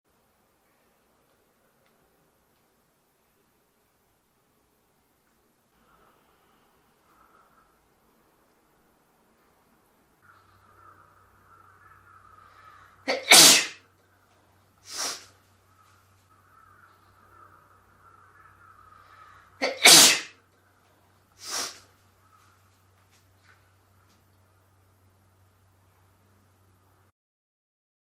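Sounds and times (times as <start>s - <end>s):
short breathy burst: 12.4s - 13.8s, 14.8s - 15.4s, 19.0s - 20.4s, 21.4s - 22.0s
person sneezing: 13.1s - 13.8s, 14.9s - 15.3s, 19.6s - 20.4s, 21.4s - 21.8s.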